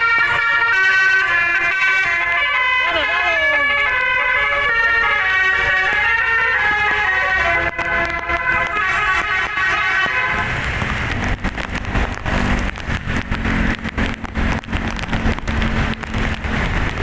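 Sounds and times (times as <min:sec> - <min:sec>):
loud noisy rush with crackles: 0:00.0 - 0:17.0
musical air horn tune: 0:06.9 - 0:10.6.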